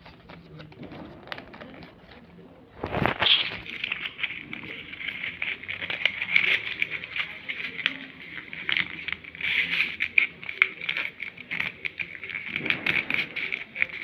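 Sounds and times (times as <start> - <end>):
paper rustling and crinkling: 0.0 - 14.0.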